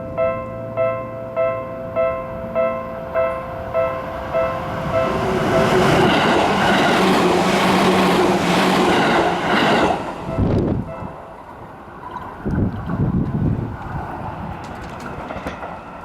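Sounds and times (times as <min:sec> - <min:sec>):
level crossing warning bell: 0:00.0 - 0:07.0
train passing: 0:00.0 - 0:16.0.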